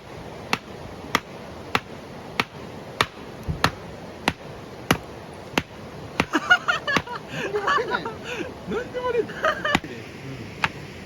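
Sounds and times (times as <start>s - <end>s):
firewood being struck: 0.4s - 7.2s, 10.6s - 10.8s.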